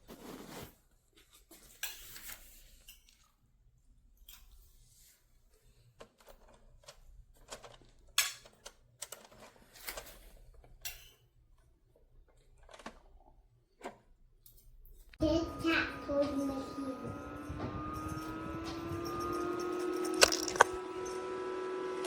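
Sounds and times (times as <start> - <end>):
small hard objects clattering: 19.7 - 20.8.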